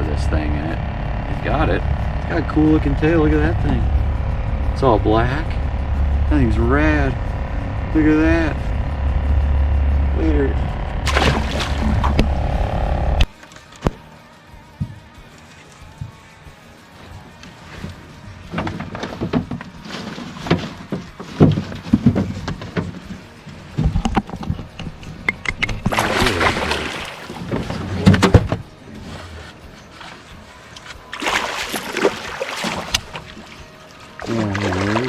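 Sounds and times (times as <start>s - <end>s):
water splashing: 11.0s - 12.6s, 25.9s - 27.7s, 29.9s - 35.0s
knocks and clatter in boat: 17.7s - 35.0s.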